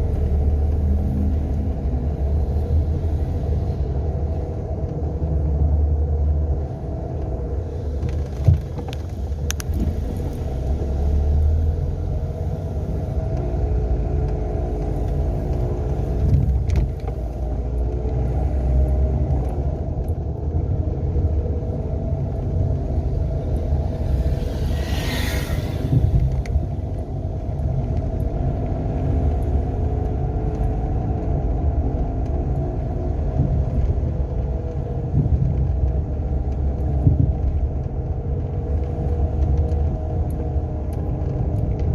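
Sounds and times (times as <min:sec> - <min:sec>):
car engine driving: 0:00.0 - 0:41.9
road rumble: 0:00.0 - 0:41.9
brief whoosh: 0:23.8 - 0:26.8.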